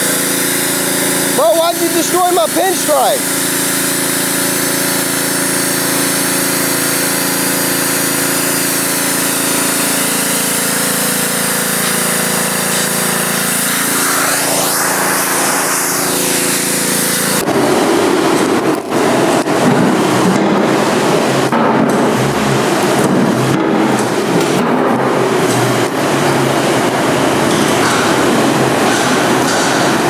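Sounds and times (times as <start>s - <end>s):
machine running: 0.0s - 30.0s
rough rushing noise: 11.2s - 17.8s.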